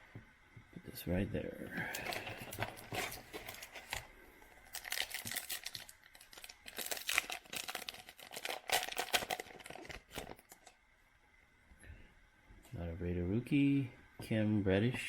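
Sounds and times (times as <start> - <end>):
foil pack crinkling: 1.8 - 10.8.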